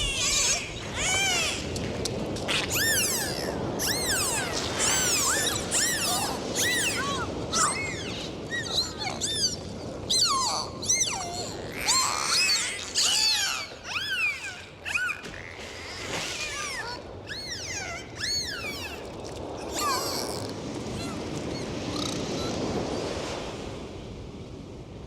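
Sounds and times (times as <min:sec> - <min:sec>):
dolphins whistling: 0:00.0 - 0:01.7, 0:02.5 - 0:20.4.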